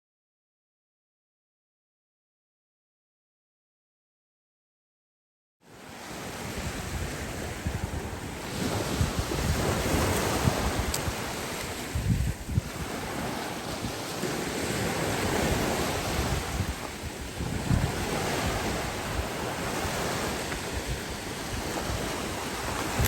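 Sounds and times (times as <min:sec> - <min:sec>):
sea waves washing on beach: 0:05.7 - 0:23.0
wind buffeting microphone: 0:05.8 - 0:23.0.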